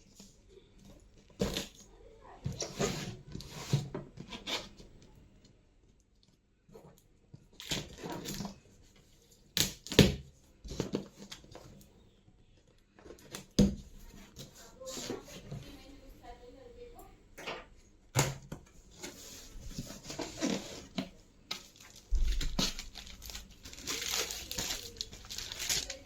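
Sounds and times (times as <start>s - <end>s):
cardboard and plastic rustling: 0.2s - 5.0s, 7.6s - 11.9s, 18.8s - 26.0s.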